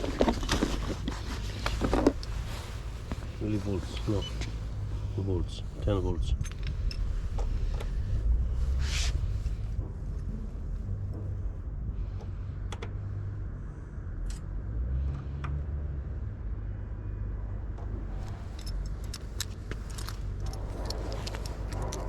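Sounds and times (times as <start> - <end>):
steady low rumble: 0.0 - 14.7, 16.1 - 22.0
metallic clicks and clinks: 5.5 - 8.1, 18.2 - 22.0.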